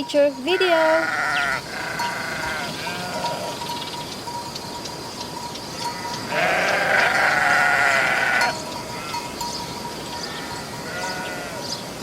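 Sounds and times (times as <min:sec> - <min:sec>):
sheep bleating: 0:00.5 - 0:03.6, 0:05.8 - 0:09.3, 0:10.2 - 0:11.7.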